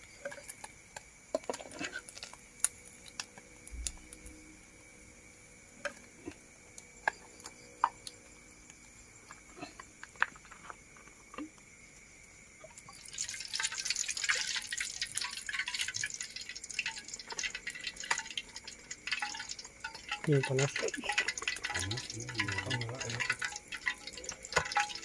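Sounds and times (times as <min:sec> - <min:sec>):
fish sizzling in hot oil: 0:12.4 - 0:25.0.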